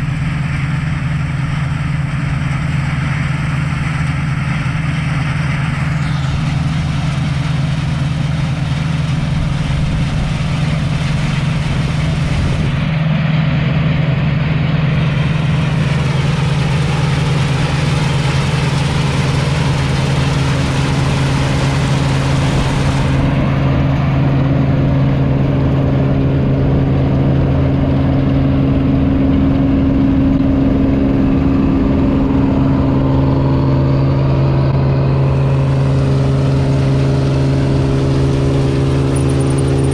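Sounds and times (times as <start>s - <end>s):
combine harvester engine hum: 0.0s - 39.9s
machinery whirring: 14.0s - 39.9s.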